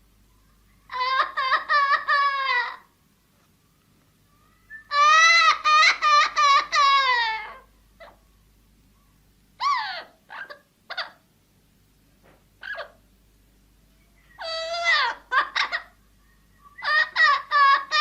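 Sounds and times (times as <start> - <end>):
parrot calling: 0.8 - 2.9, 4.4 - 8.2, 9.6 - 11.2, 12.6 - 13.0, 14.2 - 18.0.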